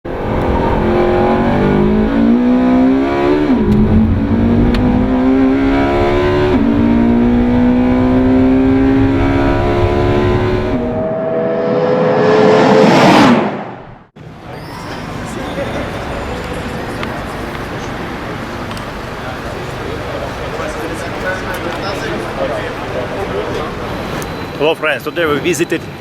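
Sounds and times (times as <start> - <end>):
car engine accelerating hard: 0.1 - 13.8
rising rush of noise: 0.1 - 14.1.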